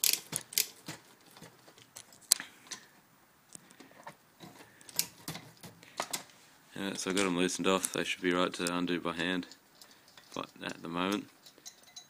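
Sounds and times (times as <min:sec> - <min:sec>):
hand tool clicking on metal: 0:00.0 - 0:00.9.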